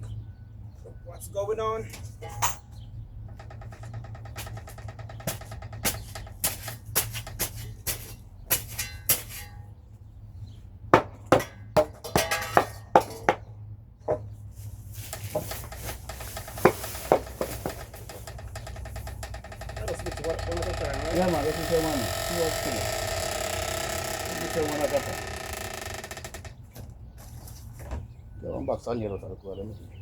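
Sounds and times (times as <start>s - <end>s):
metal tool clanks and knocks: 2.2s - 2.8s, 11.3s - 13.4s.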